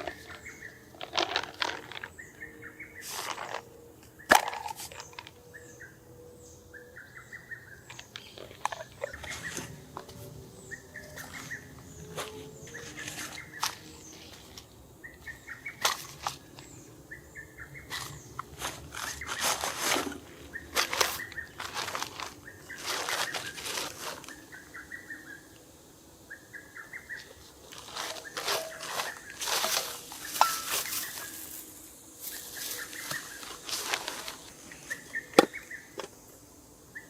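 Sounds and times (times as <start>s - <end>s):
bird trilling: 10.6s - 14.4s
rustling: 17.9s - 24.5s, 27.4s - 35.2s.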